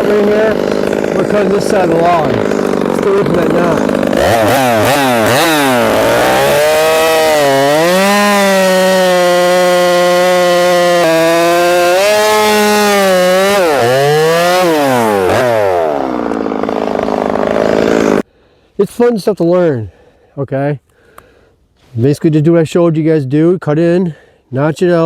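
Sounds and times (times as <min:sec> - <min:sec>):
chainsaw cutting log: 0:00.0 - 0:18.3.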